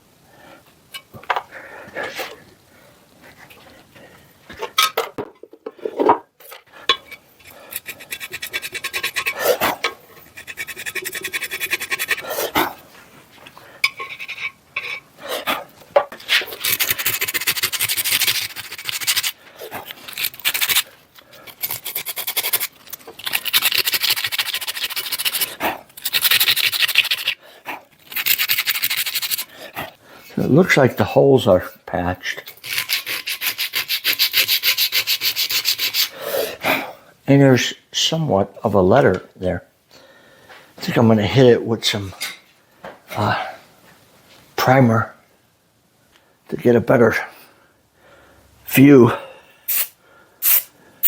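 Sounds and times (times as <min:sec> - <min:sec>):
scraping on metal casting: 0:06.9 - 0:12.6, 0:13.8 - 0:15.1.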